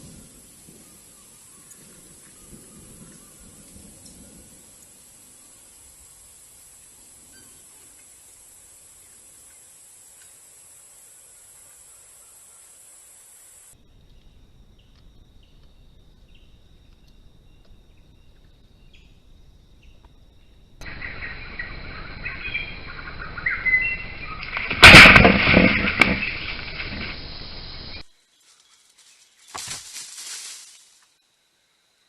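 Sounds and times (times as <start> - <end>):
bird chirps: 19.8 - 25.0.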